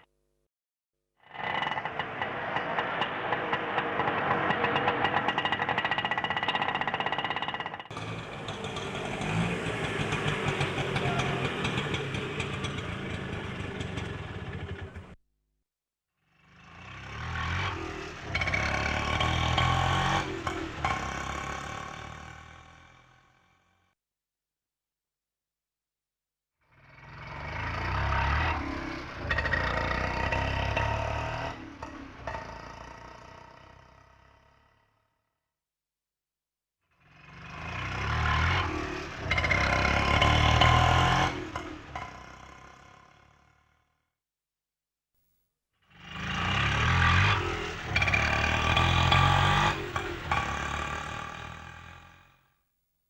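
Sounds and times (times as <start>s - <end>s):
small engine revving: 1.2s - 15.2s, 16.3s - 23.4s, 26.7s - 34.9s, 36.9s - 43.8s, 45.9s - 52.5s
rickshaw engine rattling: 1.4s - 15.2s.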